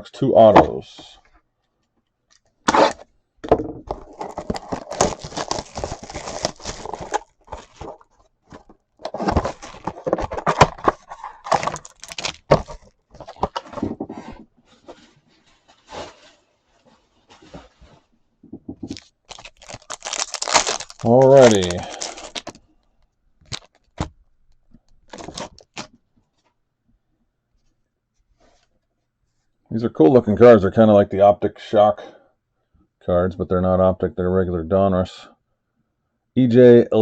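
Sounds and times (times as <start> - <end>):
handling noises: 2.3 - 22.6, 23.4 - 26.0
tearing and crinkling wrapping: 3.9 - 13.8, 18.9 - 22.7, 23.4 - 25.9.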